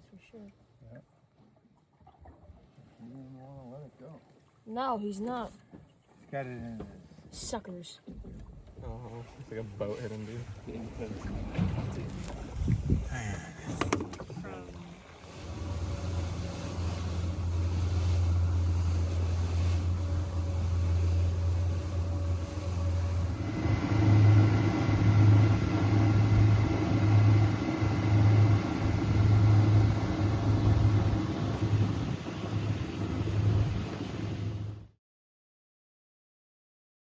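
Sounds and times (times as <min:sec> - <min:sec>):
boat engine running: 0:04.8 - 0:35.0
faint steady whine: 0:15.3 - 0:34.8.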